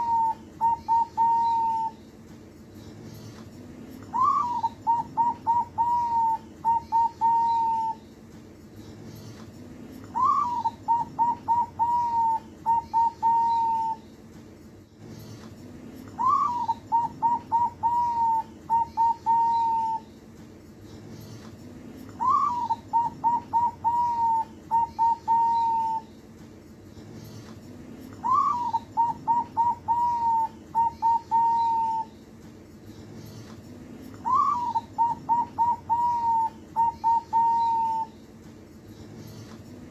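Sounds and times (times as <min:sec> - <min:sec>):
dove cooing: 0:00.0 - 0:02.0, 0:04.1 - 0:08.0, 0:10.2 - 0:14.0, 0:16.2 - 0:20.1, 0:22.1 - 0:26.1, 0:28.2 - 0:32.1, 0:34.2 - 0:38.2.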